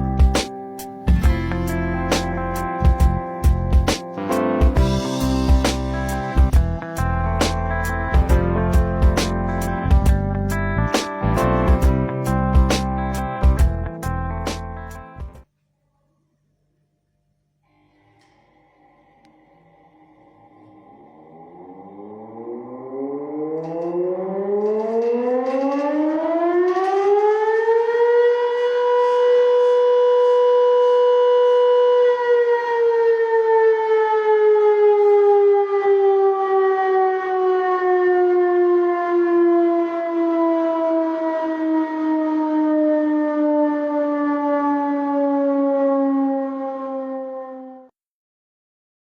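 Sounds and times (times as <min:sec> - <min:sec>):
siren winding up and down: 0:01.2 - 0:04.0, 0:04.8 - 0:12.9, 0:20.3 - 0:47.8.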